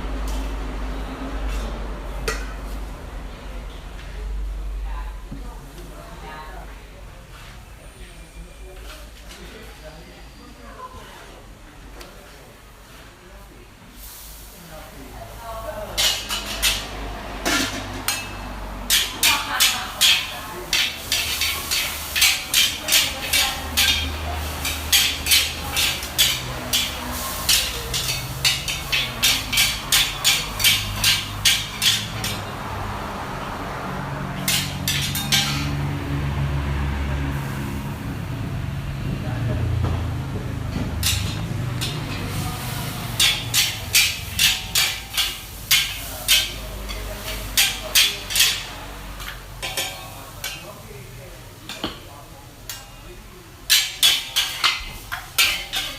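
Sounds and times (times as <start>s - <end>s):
metal utensils scraping cookware: 15.9s - 32.6s, 34.4s - 35.9s, 41.0s - 50.8s, 53.7s - 55.9s.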